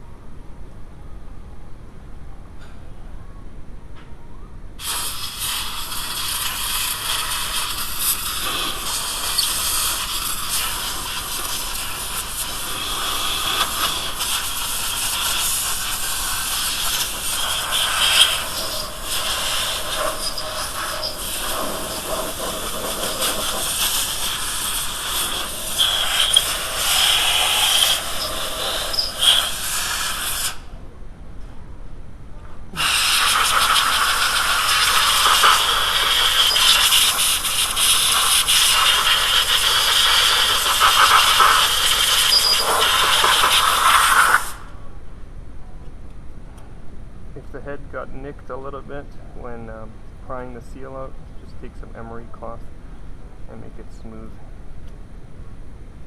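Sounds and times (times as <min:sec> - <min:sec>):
tool scraping metal: 0:18.0 - 0:30.3.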